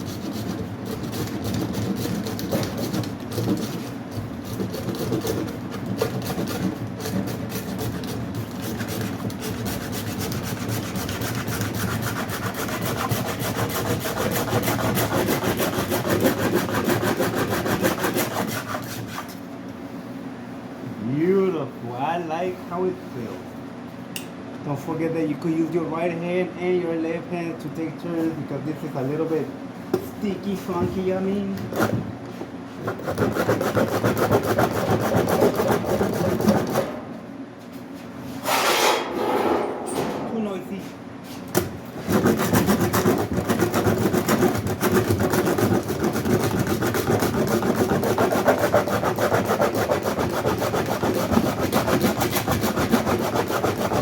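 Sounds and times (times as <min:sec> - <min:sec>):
hand plane rasping filler: 0:00.0 - 0:19.3, 0:32.9 - 0:36.8, 0:42.0 - 0:54.0.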